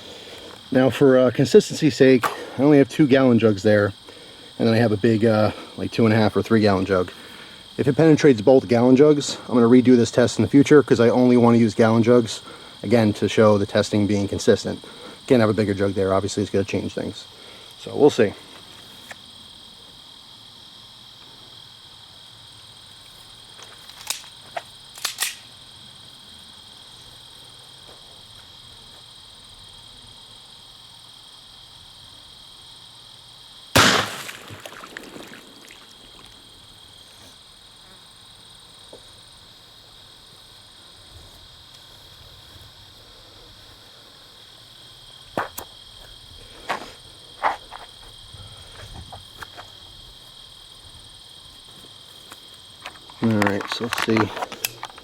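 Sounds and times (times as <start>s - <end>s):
crickets chirping: 0.0s - 55.0s
small clicks: 23.8s - 24.3s, 24.9s - 25.5s
pistol shot: 33.8s - 35.6s.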